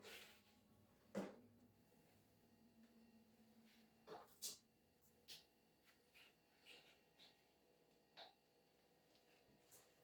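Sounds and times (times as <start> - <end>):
faint brushing sounds: 3.6 - 7.5.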